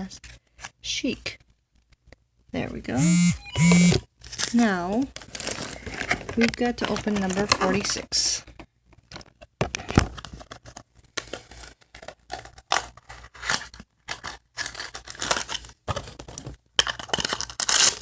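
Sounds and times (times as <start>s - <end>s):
packaging crinkling and tearing: 4.2s - 7.6s, 9.9s - 18.0s.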